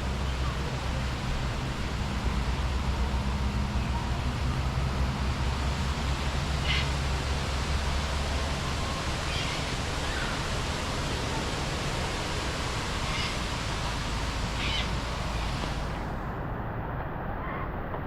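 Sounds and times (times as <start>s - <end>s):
rain falling: 0.0s - 16.2s
short bird calls: 6.6s - 6.9s, 14.6s - 15.0s.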